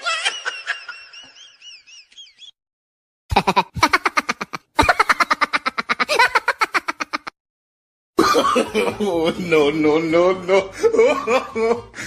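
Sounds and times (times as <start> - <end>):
staccato laughing: 3.3 - 7.4.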